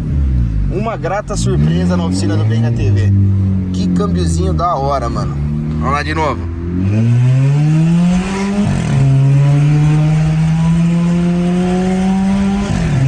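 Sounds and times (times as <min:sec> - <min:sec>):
car engine accelerating: 0:00.0 - 0:13.0.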